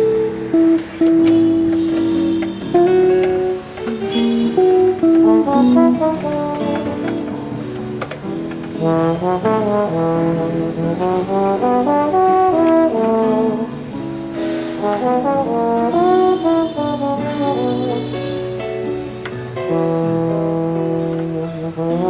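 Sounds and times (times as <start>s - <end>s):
brass instrumental music: 0.0s - 22.0s.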